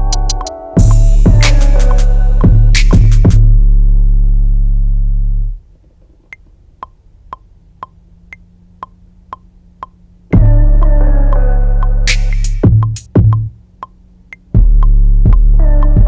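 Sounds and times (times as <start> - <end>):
metronome click: 0.0 - 2.1, 6.3 - 16.0
electronic beat: 0.0 - 3.6, 6.8 - 16.0
heavy bass note: 0.0 - 5.6, 10.4 - 13.6.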